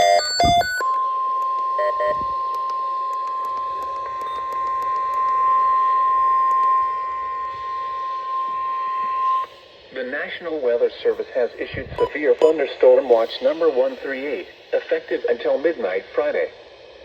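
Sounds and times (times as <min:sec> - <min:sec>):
steady high alarm tone: 0:00.0 - 0:03.1, 0:03.7 - 0:09.6
radio hiss: 0:03.3 - 0:17.0
short beeps: 0:12.0 - 0:12.6.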